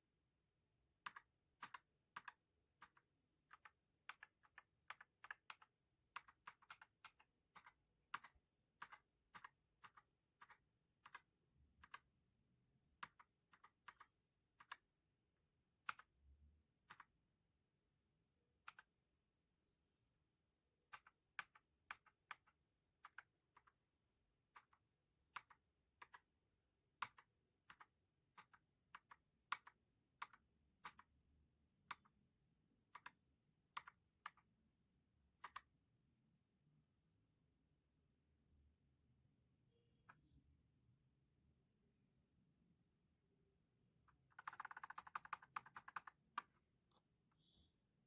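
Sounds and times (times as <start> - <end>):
mechanical keyboard keystrokes: 44.4 - 46.5.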